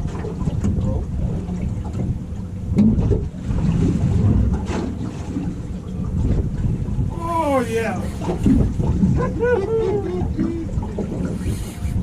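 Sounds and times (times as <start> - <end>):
water rumble: 0.0 - 12.0
wind buffeting microphone: 0.0 - 12.0.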